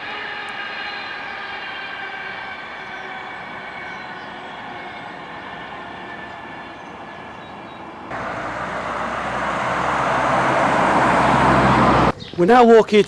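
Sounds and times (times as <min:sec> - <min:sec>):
passing vehicle whine: 0:00.0 - 0:12.2
even rushing noise: 0:08.1 - 0:12.1.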